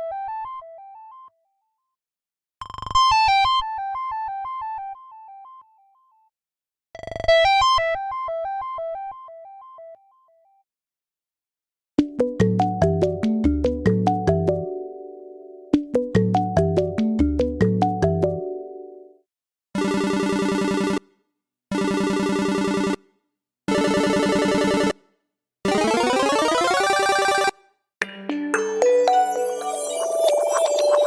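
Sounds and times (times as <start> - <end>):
phone ringtone melody: 26.0 - 31.0.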